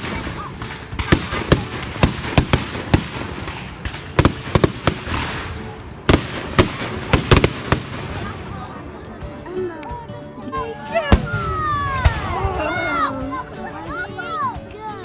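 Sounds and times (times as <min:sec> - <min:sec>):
fireworks bangs and cracks: 0:00.0 - 0:09.4, 0:10.8 - 0:13.0
fireworks crackle and rumble: 0:00.0 - 0:13.7.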